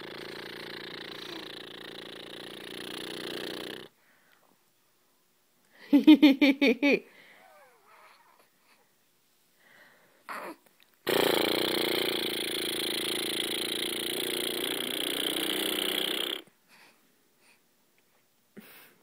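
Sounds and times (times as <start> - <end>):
woman making buzzing snore-like noise: 0.0 - 3.9, 11.1 - 16.5.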